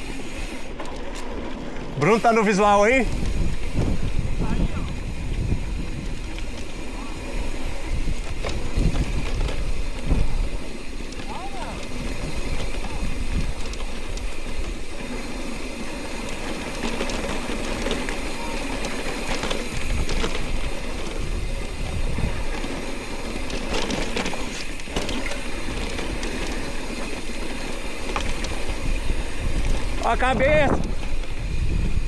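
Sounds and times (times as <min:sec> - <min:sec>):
clicks and rattles on rough trail: 0:00.0 - 0:32.0
wind buffeting microphone: 0:02.0 - 0:15.0, 0:18.9 - 0:24.0, 0:25.4 - 0:32.0.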